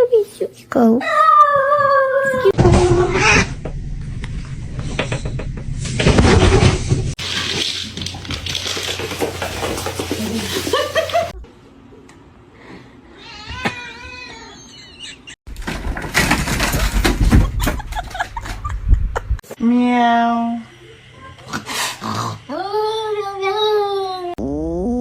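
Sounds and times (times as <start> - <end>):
handling noise: 6.4 - 11.4.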